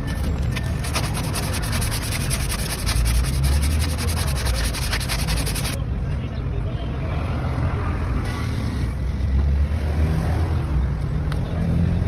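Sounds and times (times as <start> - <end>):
abrasive scrubbing on metal: 0.6 - 5.8.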